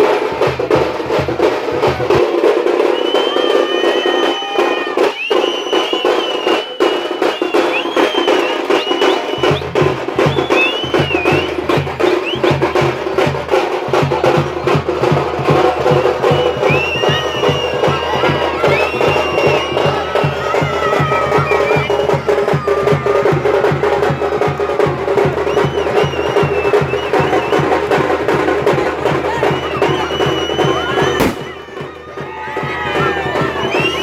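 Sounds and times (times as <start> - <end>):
frame drums beaten with sticks: 0.0 - 34.0
shrill wavering whistles: 2.8 - 12.5, 15.8 - 23.3, 25.2 - 28.0, 29.2 - 31.9, 32.8 - 34.0.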